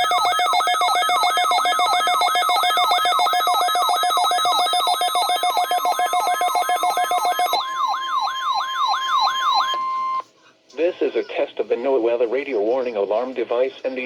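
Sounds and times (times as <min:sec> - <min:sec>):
warbling siren-like alarm sweep: 0:00.0 - 0:10.2
steady alarm tone: 0:00.0 - 0:10.3.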